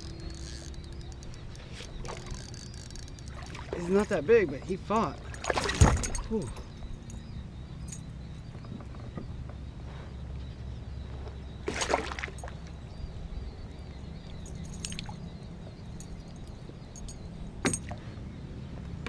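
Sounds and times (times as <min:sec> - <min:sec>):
low hum: 0:00.0 - 0:19.0
water splashing against kayak: 0:05.2 - 0:06.3.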